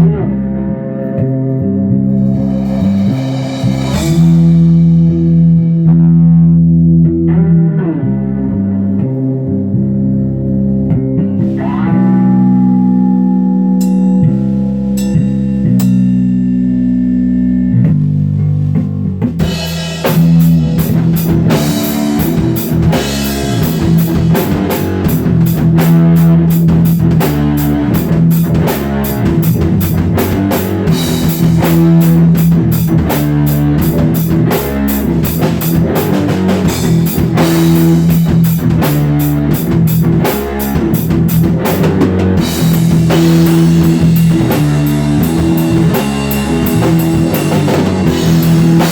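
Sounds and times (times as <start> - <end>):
low guitar riff: 0.0 - 48.9
electric guitar chord ringing: 2.0 - 6.0, 11.3 - 18.6
drums playing driving beat: 2.1 - 6.8, 10.9 - 48.9.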